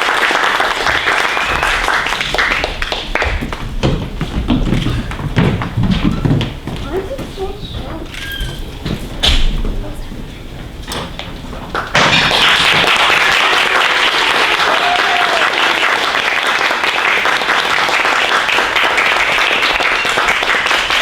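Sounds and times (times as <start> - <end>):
audience applauding: 0.0 - 3.9, 11.7 - 21.0.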